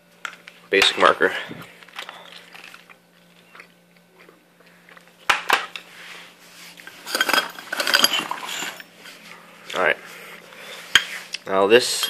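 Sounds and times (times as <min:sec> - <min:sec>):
metal parts clinking: 0:07.0 - 0:08.9.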